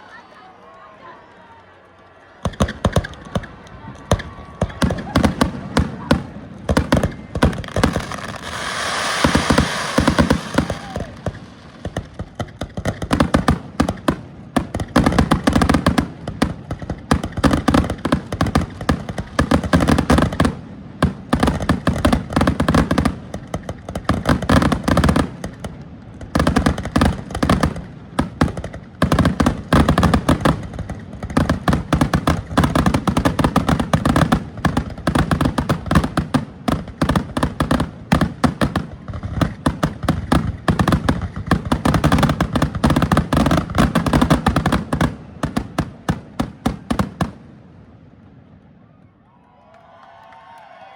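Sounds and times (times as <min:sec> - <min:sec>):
fireworks bangs and crackles: 0:02.1 - 0:48.9
fireworks hissing burst: 0:07.2 - 0:12.2.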